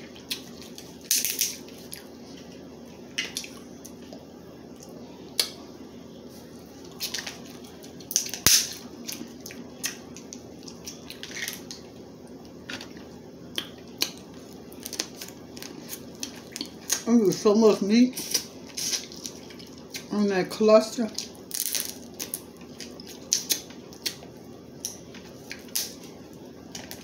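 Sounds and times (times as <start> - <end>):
crab shells cracking: 13.6 - 17.0, 21.2 - 26.0.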